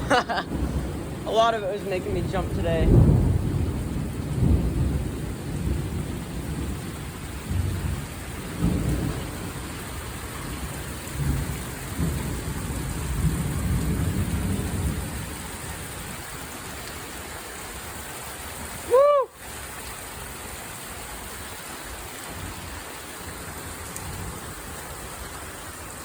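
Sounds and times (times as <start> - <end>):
thunder rumbling: 0.0 - 16.8
steady rain: 0.0 - 26.0.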